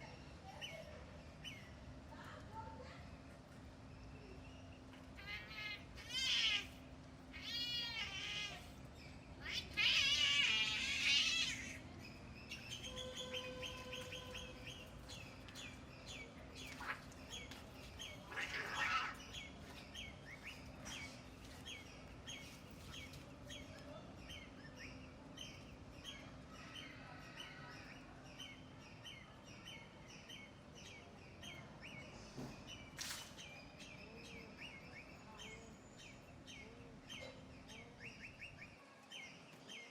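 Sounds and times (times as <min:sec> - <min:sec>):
small birds chirping: 0:00.0 - 0:39.9
cats yowling: 0:05.2 - 0:08.7, 0:09.4 - 0:11.8, 0:18.2 - 0:19.3.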